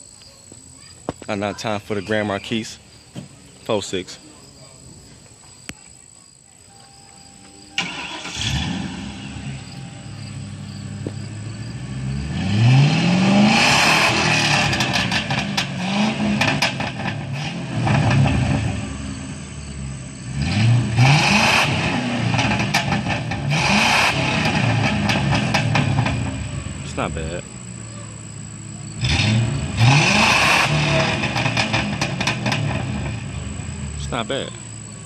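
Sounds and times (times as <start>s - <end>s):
car engine starting and revving: 7.7s - 35.0s.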